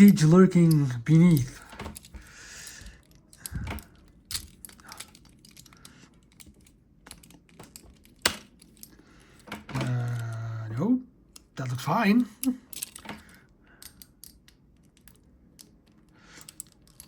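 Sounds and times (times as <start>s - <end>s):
batteries clicking and scraping: 0.0s - 10.5s.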